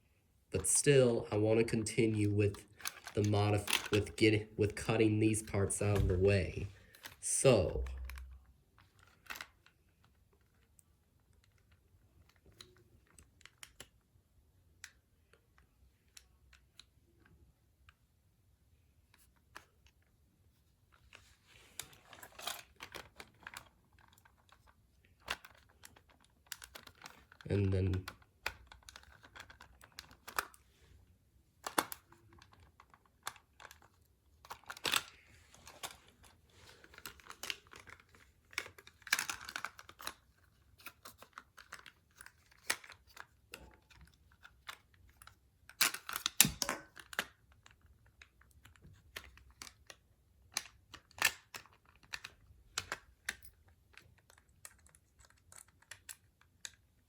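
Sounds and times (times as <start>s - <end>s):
plastic toy parts clicking: 2.8s - 4.2s, 22.1s - 30.6s, 36.9s - 57.0s.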